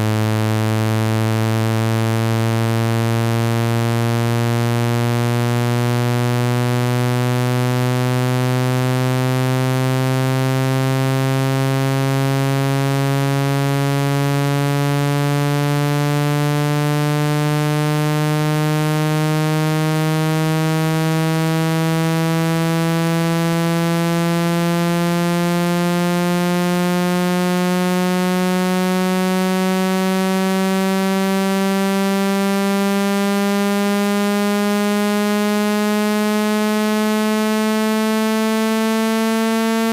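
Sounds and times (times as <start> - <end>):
buzzy rising test tone: 27.1 - 39.9.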